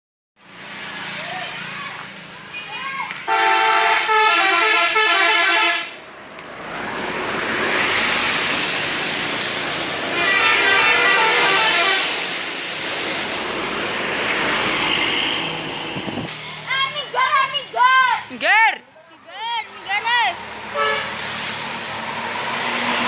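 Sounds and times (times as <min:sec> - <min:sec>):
bus passing: 0:00.4 - 0:23.0
musical bus air horn: 0:03.3 - 0:06.0, 0:10.1 - 0:12.3, 0:20.7 - 0:21.3.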